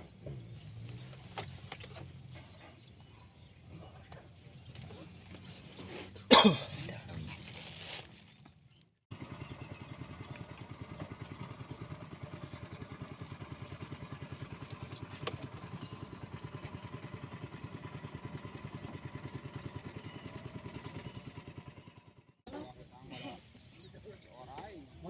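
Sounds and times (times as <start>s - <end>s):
small engine puttering: 9.1s - 22.8s.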